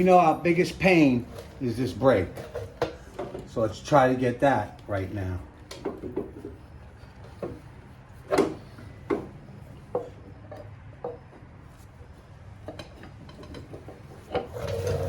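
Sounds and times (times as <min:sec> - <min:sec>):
metal parts knocking and clunking: 0:08.3 - 0:15.0.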